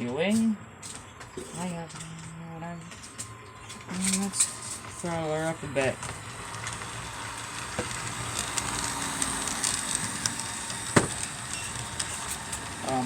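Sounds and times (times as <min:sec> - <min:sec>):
model train whirring on track: 0:02.8 - 0:13.0
small clicks: 0:06.0 - 0:12.8.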